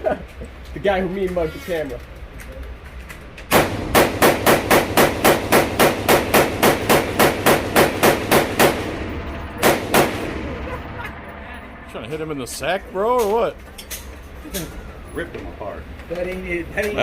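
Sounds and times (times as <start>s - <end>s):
rapid gunfire: 3.5s - 10.6s.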